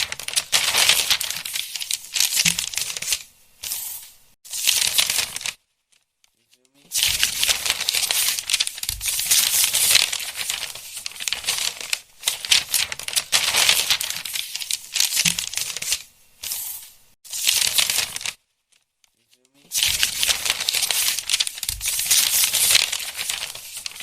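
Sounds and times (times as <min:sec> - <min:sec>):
book pages rustling: 0:00.0 - 0:24.0.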